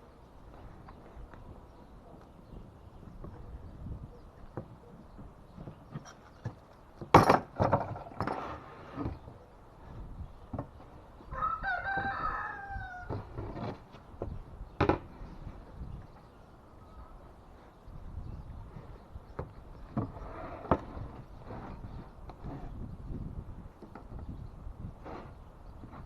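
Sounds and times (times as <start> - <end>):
sharp knocks and clatters: 5.6 - 9.2
rooster crowing: 11.3 - 13.2.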